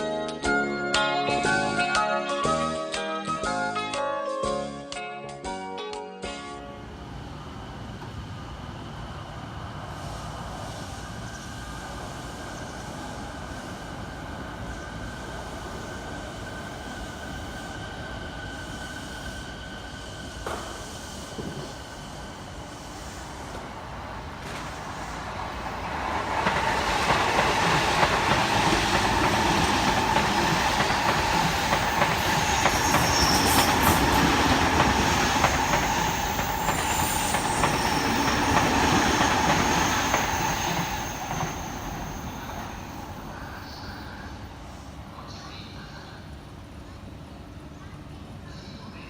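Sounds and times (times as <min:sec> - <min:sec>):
electric train wheel rumble: 0:06.6 - 0:44.7
high wheel squeal: 0:31.7 - 0:43.9.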